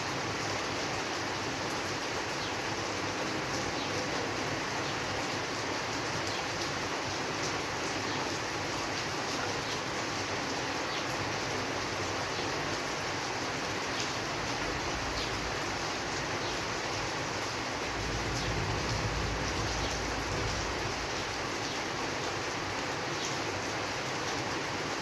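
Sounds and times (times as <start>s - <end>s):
steady rain hiss: 0.0s - 25.0s
low rumble: 14.5s - 22.0s.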